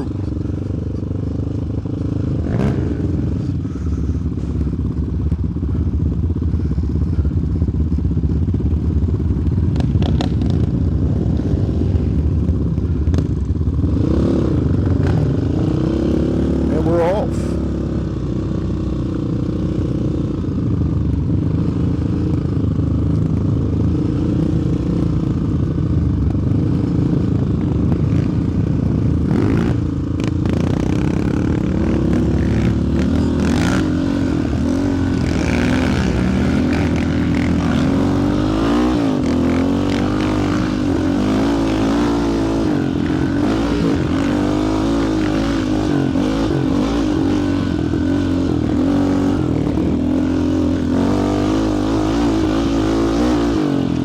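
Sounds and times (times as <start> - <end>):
quad engine revving: 13.1 - 18.0, 28.2 - 54.0.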